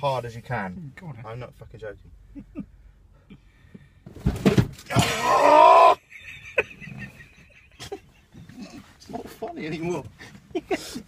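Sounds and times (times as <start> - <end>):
person yelling in pain: 4.9 - 6.0.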